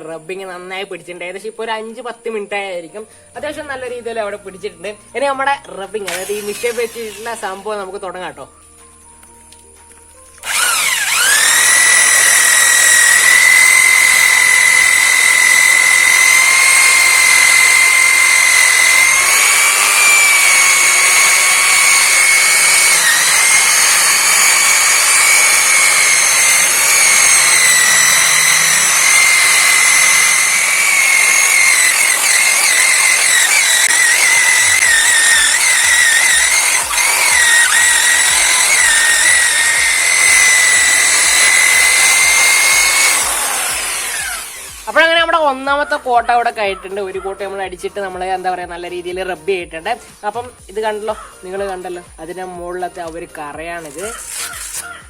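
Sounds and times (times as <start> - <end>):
electric drill polishing metal: 5.7 - 7.9, 10.4 - 47.3, 53.8 - 55.0.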